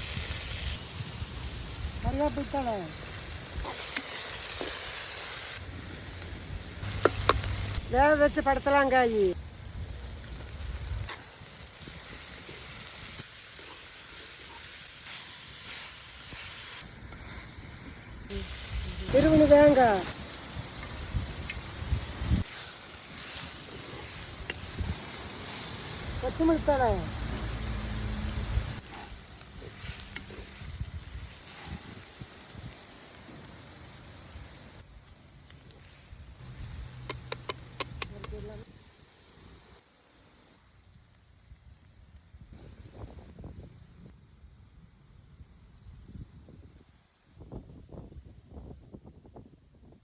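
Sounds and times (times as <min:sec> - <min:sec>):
vegetables sizzling in hot oil: 0:00.0 - 0:39.8.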